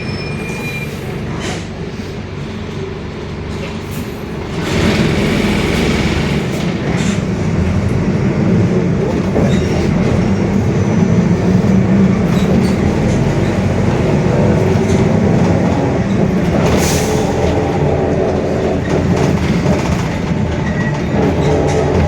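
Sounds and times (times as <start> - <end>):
bus diesel engine drone: 0.0 - 22.0
differential growling: 11.8 - 20.1.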